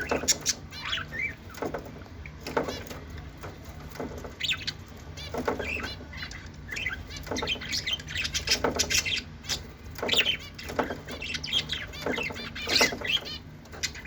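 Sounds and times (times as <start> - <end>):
lovebirds chirping and squawking: 0.0 - 14.0.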